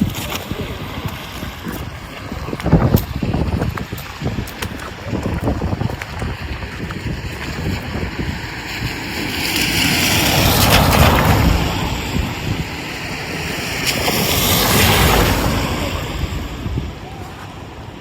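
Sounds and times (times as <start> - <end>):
strong wind buffeting microphone: 0.0 - 18.0
low rumble: 9.8 - 17.8.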